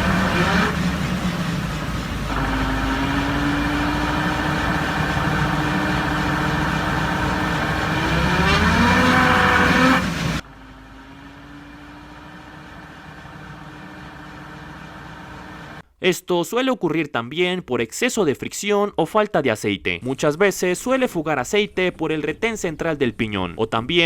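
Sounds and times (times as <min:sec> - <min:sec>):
engine and road noise: 0:00.0 - 0:15.8
steady hum: 0:00.0 - 0:15.8
vehicle differential whining: 0:00.0 - 0:15.8.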